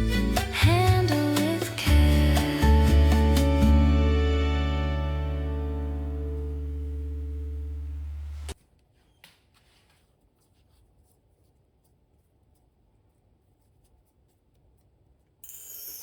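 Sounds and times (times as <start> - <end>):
background music: 0.0 - 7.7.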